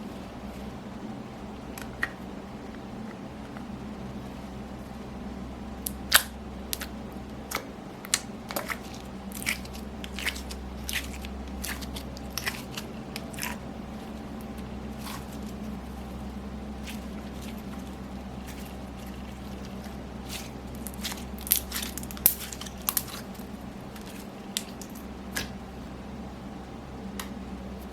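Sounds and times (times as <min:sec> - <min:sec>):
steady low hum: 0:00.0 - 0:27.9.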